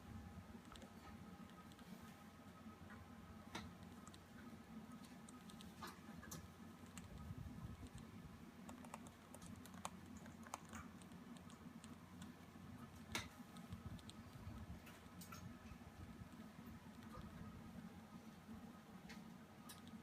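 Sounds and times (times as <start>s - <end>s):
low steady hum: 0.0s - 20.0s
faint clicks and taps: 2.8s - 17.4s.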